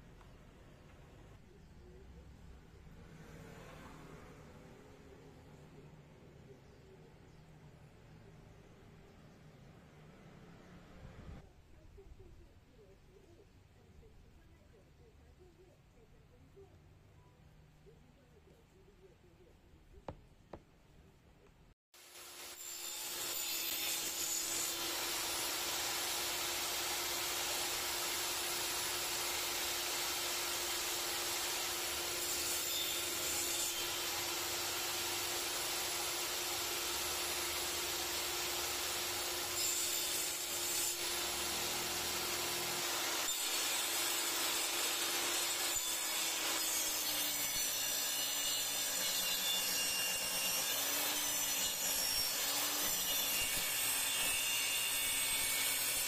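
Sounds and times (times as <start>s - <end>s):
power tool sawing wood: 22.0s - 56.0s.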